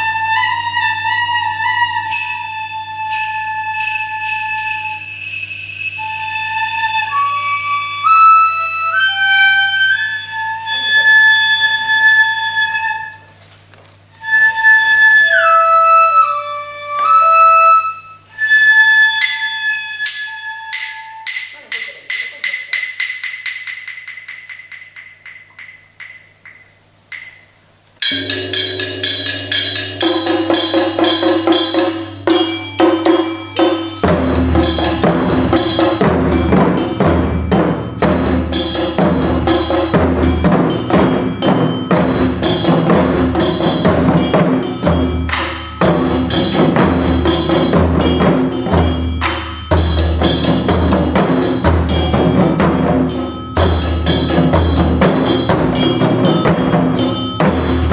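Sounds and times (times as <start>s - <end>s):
taiko drums: 18.5s - 57.9s
rapid woodblock-like clicks: 21.3s - 28.8s.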